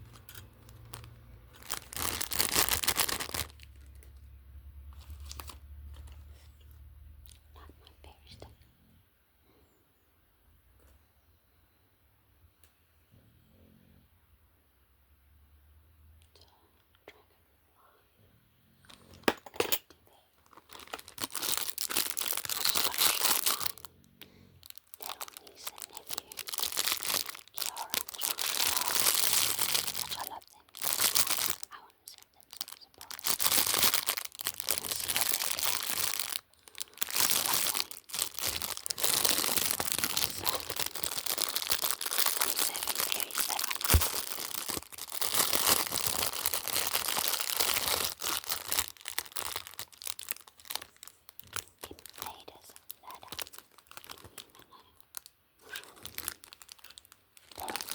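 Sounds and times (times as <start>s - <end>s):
packaging crinkling and tearing: 0.0s - 4.3s, 4.9s - 6.4s, 20.4s - 23.9s, 24.6s - 57.9s.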